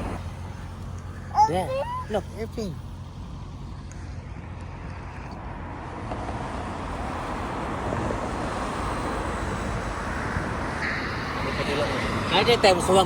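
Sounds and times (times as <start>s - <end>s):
jet engines passing overhead: 6.4s - 13.0s.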